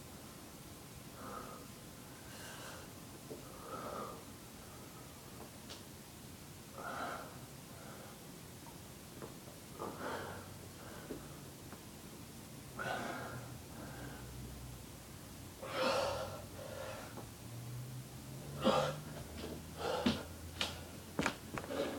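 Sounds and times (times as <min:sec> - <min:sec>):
person breathing hard: 0:09.8 - 0:11.4, 0:12.8 - 0:14.4, 0:15.6 - 0:17.2, 0:18.6 - 0:19.1, 0:19.7 - 0:21.0.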